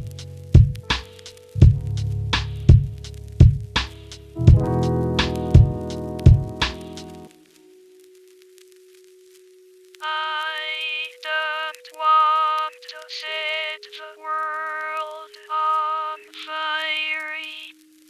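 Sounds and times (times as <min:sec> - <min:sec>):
sustained bass notes: 0:01.6 - 0:07.3
held synth note: 0:04.4 - 0:07.3
voice-like synth lead melody: 0:04.4 - 0:07.3, 0:10.0 - 0:17.7.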